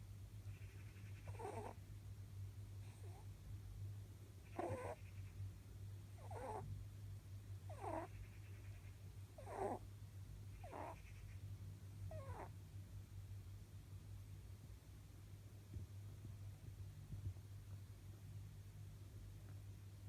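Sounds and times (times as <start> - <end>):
rabbit snoring: 0.0 - 1.8, 2.8 - 3.4, 4.4 - 5.4, 6.1 - 6.7, 7.7 - 9.9, 10.5 - 11.4, 12.1 - 12.6
steady low hum: 0.0 - 20.0.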